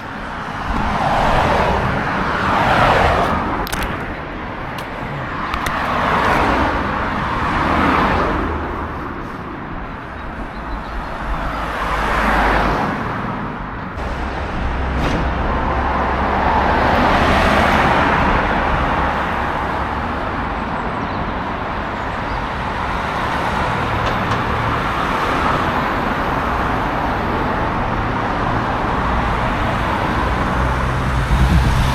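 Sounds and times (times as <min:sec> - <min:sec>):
cars passing: 0:00.0 - 0:31.9
low traffic rumble: 0:00.0 - 0:31.9.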